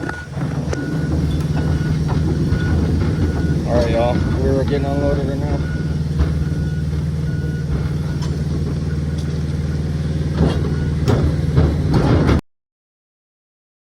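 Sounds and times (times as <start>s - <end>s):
sharp knocks: 0.0s - 9.4s, 10.3s - 12.4s
backup alarm beeping: 0.0s - 9.8s, 10.6s - 11.2s
excavator diesel engine running: 0.0s - 12.4s.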